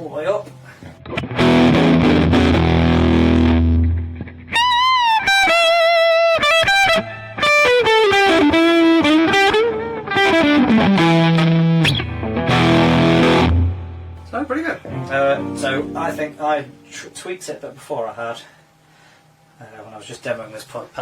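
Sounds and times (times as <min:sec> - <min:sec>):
distorted electric guitar: 0:00.9 - 0:17.1.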